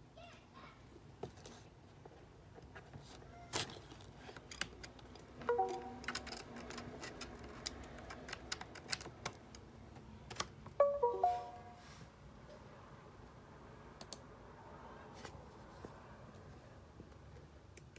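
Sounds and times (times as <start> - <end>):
keypad keys clicking: 4.5 - 9.7.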